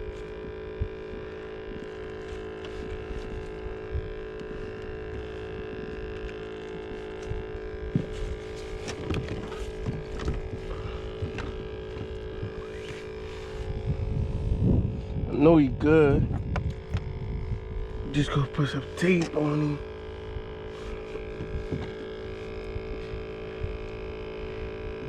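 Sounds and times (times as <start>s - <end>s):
motor hum: 0.0s - 25.0s.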